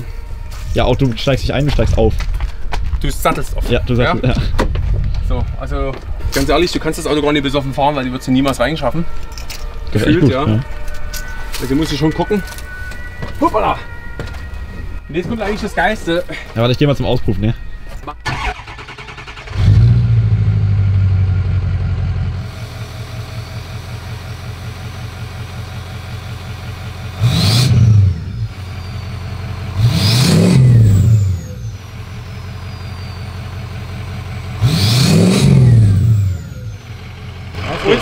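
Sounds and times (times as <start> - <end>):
diesel engine idling and revving: 18.2 - 38.0
turbocharger whistle: 22.2 - 38.0.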